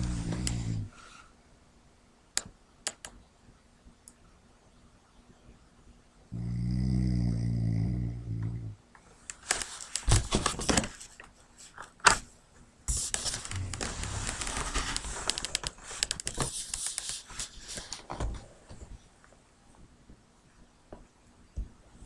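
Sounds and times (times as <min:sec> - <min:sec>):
dog snoring: 0:00.0 - 0:00.9, 0:06.3 - 0:08.8
rustling and crackling: 0:00.0 - 0:01.2, 0:08.9 - 0:22.0.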